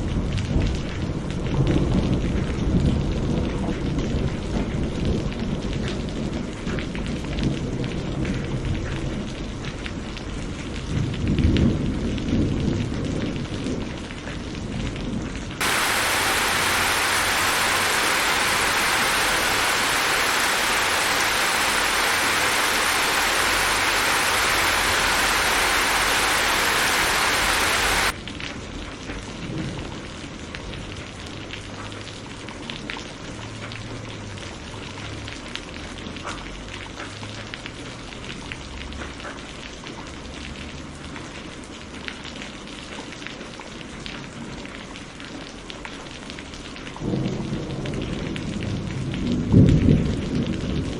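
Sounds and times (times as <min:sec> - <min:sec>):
raindrops ticking: 0:15.6 - 0:28.2
heavy rain pouring: 0:15.6 - 0:28.4, 0:40.1 - 0:50.9.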